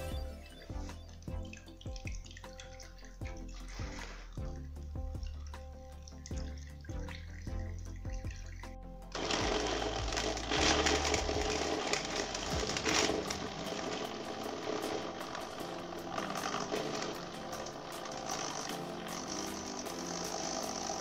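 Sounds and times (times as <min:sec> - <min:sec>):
background music: 0:00.0 - 0:21.0
small electric motor running: 0:09.2 - 0:21.0.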